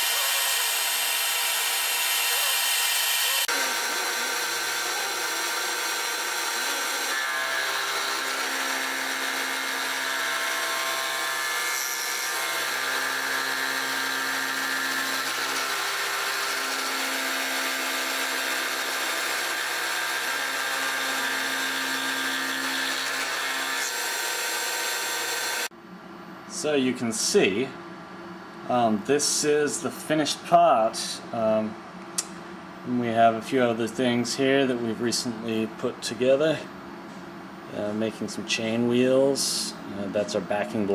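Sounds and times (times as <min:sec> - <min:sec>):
milling machine whine and hiss: 0:00.0 - 0:25.7.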